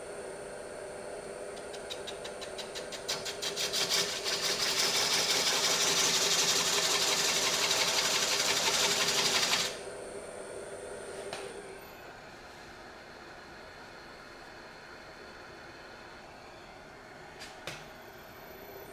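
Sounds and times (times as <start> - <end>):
lathe humming: 0.0 - 12.2
tool cutting wood hiss: 1.6 - 9.8.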